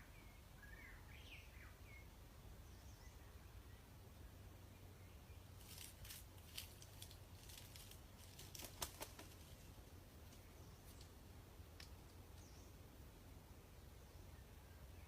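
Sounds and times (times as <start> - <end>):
faint dry crackles and clicks: 10.2 - 12.5.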